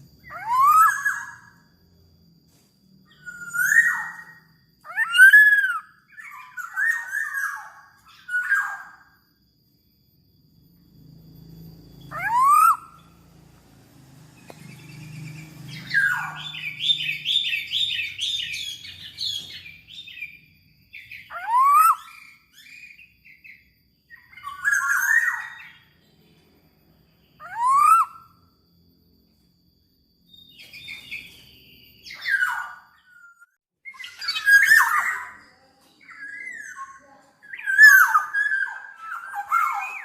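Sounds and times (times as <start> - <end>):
loud rising whistled bird calls: 0.0 - 1.8, 3.1 - 9.3, 10.9 - 13.4, 14.0 - 28.6, 30.3 - 40.0
bird chirping notes: 11.0 - 28.3, 30.2 - 40.0.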